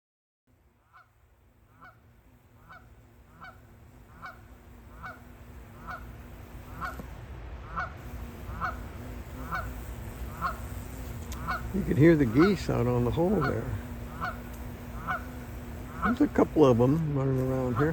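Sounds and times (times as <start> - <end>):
goose honking: 2.6 - 7.0, 7.6 - 10.7, 11.3 - 17.9.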